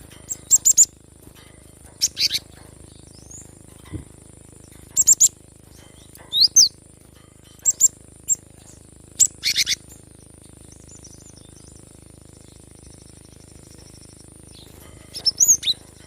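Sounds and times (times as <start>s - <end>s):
faint bird twittering: 0.0s - 16.0s
bird chirps and whistles: 0.3s - 0.9s, 6.3s - 6.8s, 9.2s - 9.9s, 14.5s - 15.8s.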